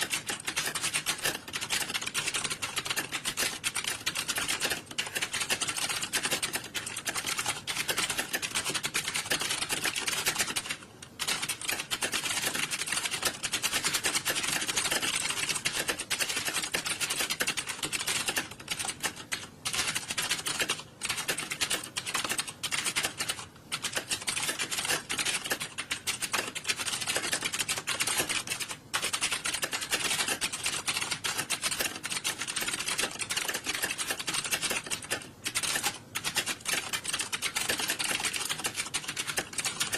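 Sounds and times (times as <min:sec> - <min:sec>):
many keyboards typing clatter: 0:00.0 - 0:39.9.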